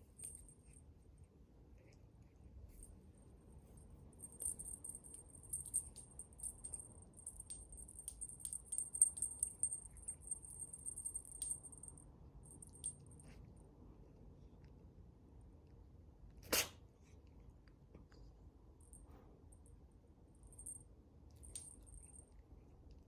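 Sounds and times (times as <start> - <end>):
jingle bell rattling: 4.2 - 13.1, 21.4 - 22.2.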